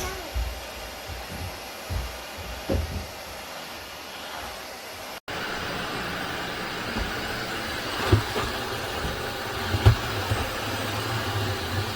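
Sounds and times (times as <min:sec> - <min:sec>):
floor cleaner motor humming: 0:03.4 - 0:11.9.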